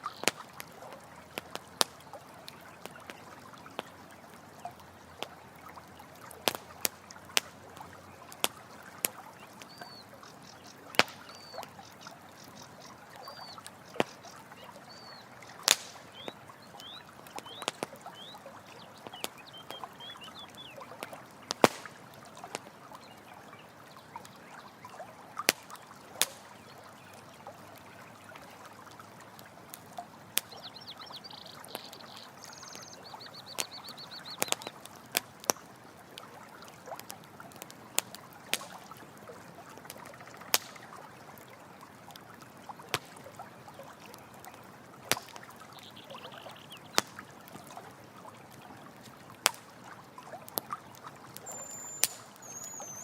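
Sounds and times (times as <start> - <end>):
campfire crackling and popping: 0.0 - 53.0
running water: 0.0 - 53.0
high chirping calls: 9.4 - 20.9, 30.5 - 34.8, 45.8 - 47.0, 51.4 - 53.0.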